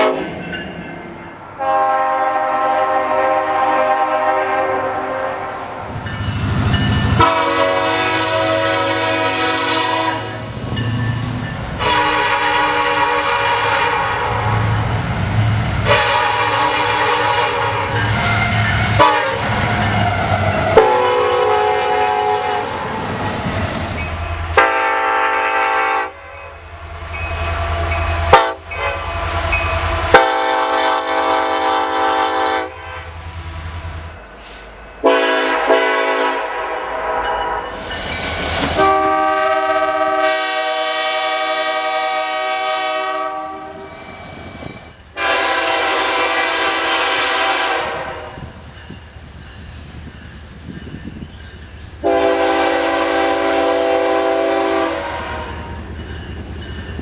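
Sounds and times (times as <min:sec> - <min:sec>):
locomotive air horn blasts: 0:00.0 - 0:00.4, 0:01.6 - 0:05.8, 0:07.1 - 0:10.5, 0:11.8 - 0:14.6, 0:15.8 - 0:19.5, 0:20.8 - 0:23.0, 0:24.6 - 0:26.2, 0:28.2 - 0:33.2, 0:34.6 - 0:37.8, 0:38.6 - 0:44.0, 0:45.2 - 0:48.5, 0:52.0 - 0:55.8.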